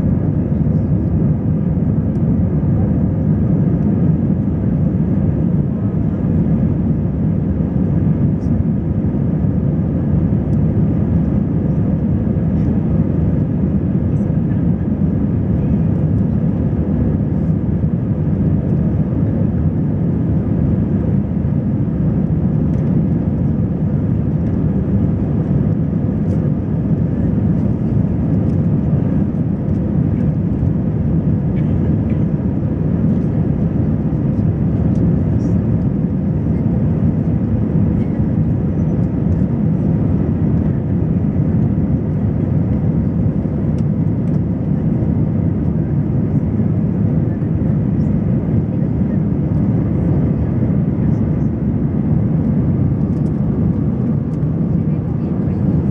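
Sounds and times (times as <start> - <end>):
aircraft engine drone: 0.0 - 55.9.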